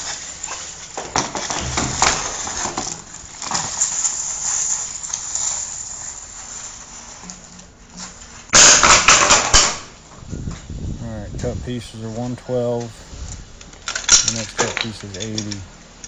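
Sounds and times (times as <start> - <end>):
plastic pipe knocking and clattering: 1.6 - 3.0.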